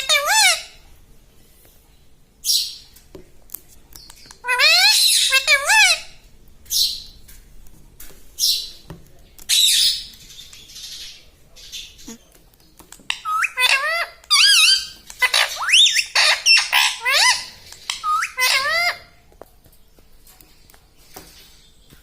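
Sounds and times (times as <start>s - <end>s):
parakeet squawking: 0.0s - 0.8s, 4.4s - 6.2s, 13.1s - 19.2s
parakeet rising and falling calls: 13.2s - 19.1s.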